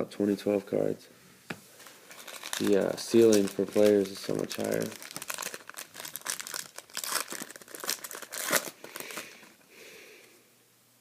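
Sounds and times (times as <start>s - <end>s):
plastic wrapper crackling: 1.8s - 9.6s.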